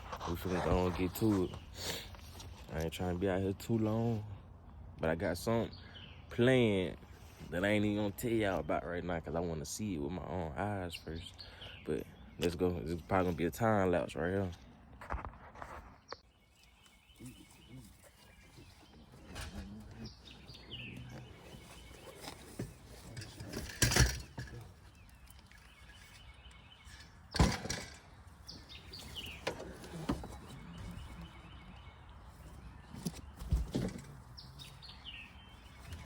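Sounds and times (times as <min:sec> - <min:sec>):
birds chirping: 0:00.0 - 0:36.0
knocks and clunks: 0:21.5 - 0:24.8, 0:26.9 - 0:31.1, 0:32.9 - 0:34.4.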